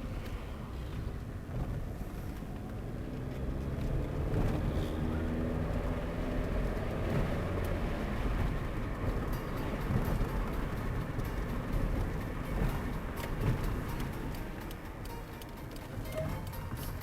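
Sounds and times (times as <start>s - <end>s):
car engine accelerating: 0.0s - 17.0s
road and tyre rumble: 0.0s - 17.0s.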